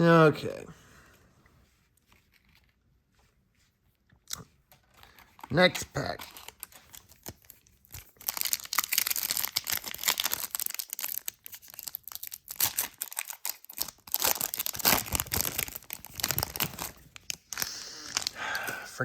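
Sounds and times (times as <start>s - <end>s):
wrapper tearing and crinkling: 5.0s - 18.4s.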